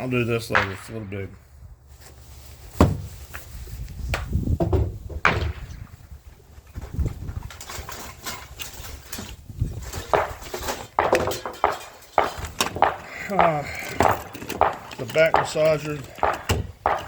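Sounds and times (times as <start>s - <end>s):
rustling and shuffling: 1.1s - 17.0s
objects knocking on work surface: 11.0s - 13.1s.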